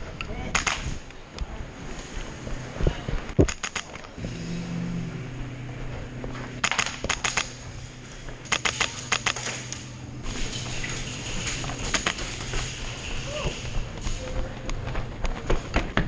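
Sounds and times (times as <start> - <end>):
low hum: 0.0 - 16.0
airsoft guns firing: 0.5 - 1.0, 6.6 - 7.6, 8.4 - 9.8.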